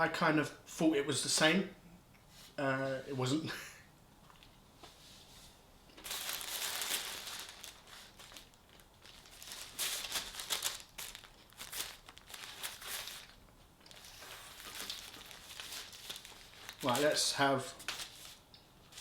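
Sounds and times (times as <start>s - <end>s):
food packaging crinkling and tearing: 6.0s - 19.0s.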